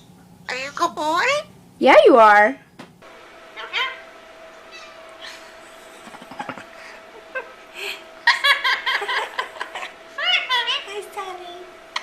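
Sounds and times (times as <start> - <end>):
parrot chirps: 3.6 - 4.1
parrot imitating laughter: 5.2 - 7.5, 8.2 - 10.5.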